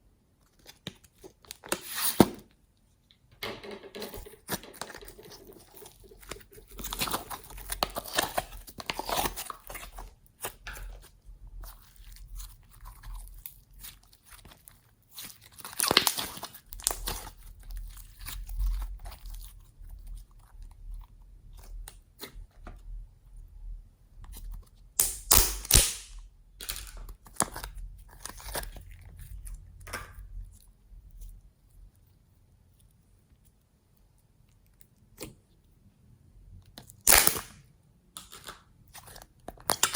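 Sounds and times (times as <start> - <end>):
slime squishing and popping: 25.0 - 28.8, 36.8 - 37.5.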